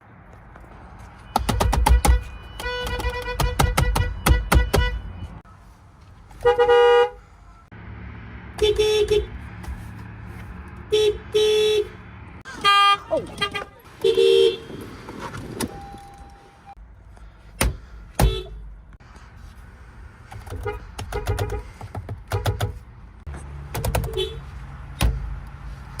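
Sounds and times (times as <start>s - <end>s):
car horn short toots: 1.8s - 5.2s, 8.6s - 9.3s, 12.5s - 14.8s.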